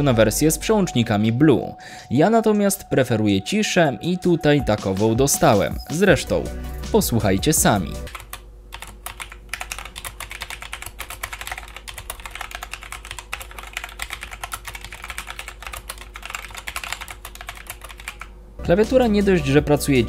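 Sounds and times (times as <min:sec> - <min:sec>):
mechanical keyboard typing: 0:07.8 - 0:18.3.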